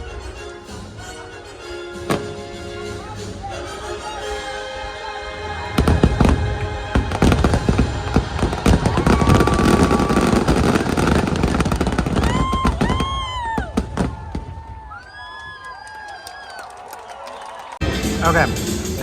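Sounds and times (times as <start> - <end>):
show music: 0.0 - 13.0, 17.8 - 19.0
fireworks bursting: 2.0 - 3.0, 5.6 - 14.9
crowd whooping: 5.3 - 17.8.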